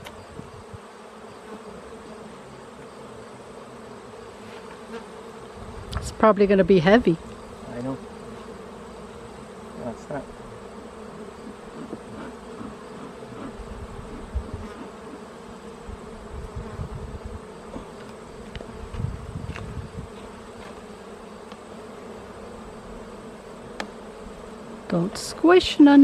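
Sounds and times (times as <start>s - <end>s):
honeybees buzzing: 0.0s - 26.0s.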